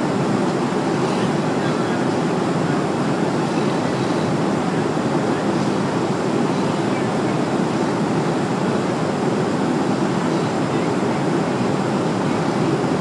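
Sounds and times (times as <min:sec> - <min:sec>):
jet airliner cabin noise: 0:00.0 - 0:13.0.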